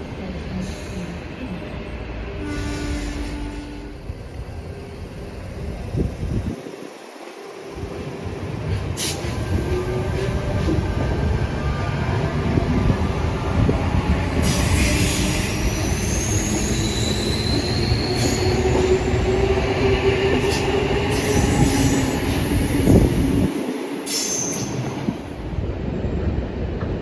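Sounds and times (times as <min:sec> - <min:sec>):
train rumbling on rails: 0:00.0 - 0:27.0
high wheel squeals: 0:14.4 - 0:19.1.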